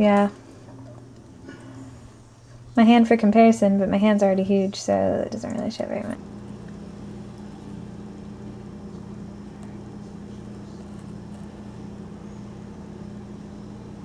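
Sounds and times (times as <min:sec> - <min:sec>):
low mechanical hum: 0:00.0 - 0:14.0.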